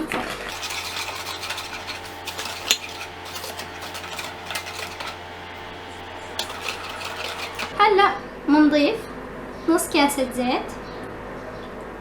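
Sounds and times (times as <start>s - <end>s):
whisk knocking bowl: 0.4s - 7.8s
whisk clicking against bowl: 0.5s - 7.8s.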